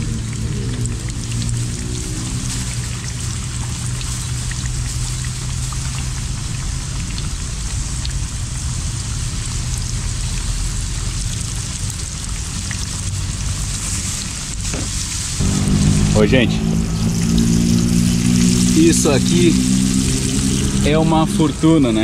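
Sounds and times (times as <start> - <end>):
fish sizzling in hot oil: 0.0 - 16.1, 16.8 - 22.0
low rumble: 15.4 - 22.0.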